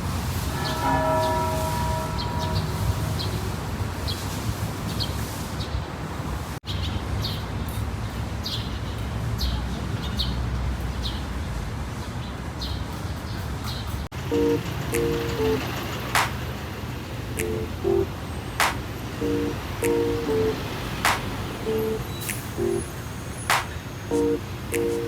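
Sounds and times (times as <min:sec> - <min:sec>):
church bell stroke: 0:00.4 - 0:03.4.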